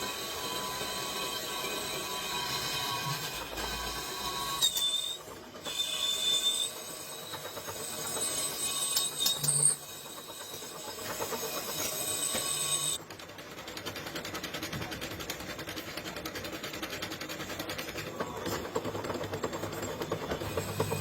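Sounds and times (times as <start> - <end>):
metalworking machinery running: 0.0 - 21.0
metal on metal squeals: 2.0 - 10.7.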